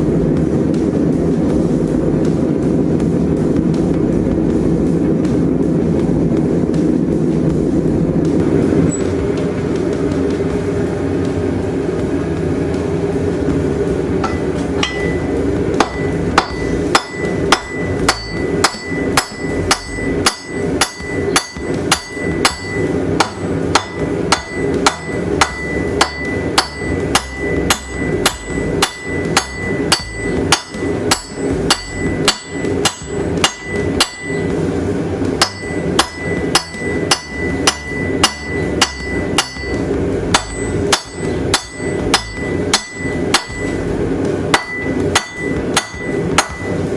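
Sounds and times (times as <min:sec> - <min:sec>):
steady rushing noise: 0:00.0 - 0:46.9
hammer ringing on anvil: 0:14.2 - 0:34.7, 0:35.4 - 0:43.9, 0:44.5 - 0:46.9.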